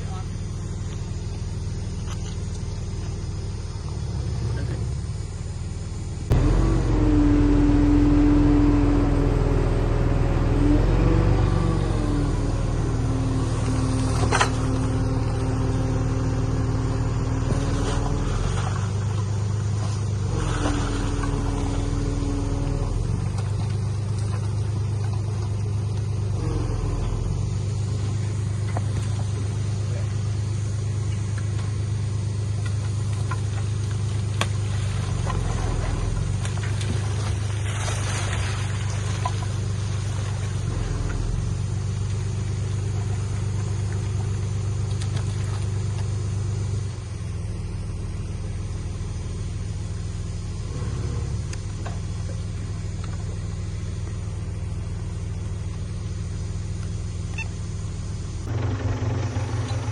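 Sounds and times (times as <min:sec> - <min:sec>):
high-pitched whine: 0:00.0 - 0:33.3
heavy diesel engine droning: 0:00.0 - 0:59.9.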